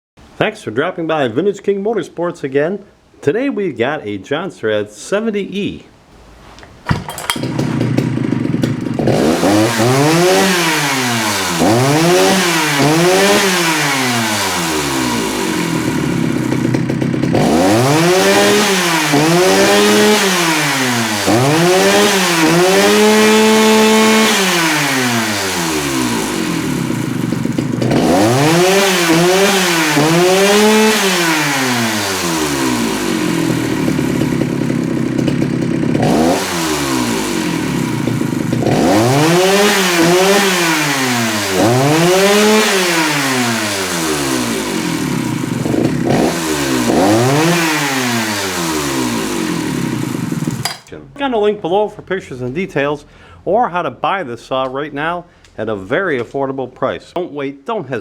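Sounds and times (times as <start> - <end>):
chainsaw revving and idling: 7.0 - 50.9.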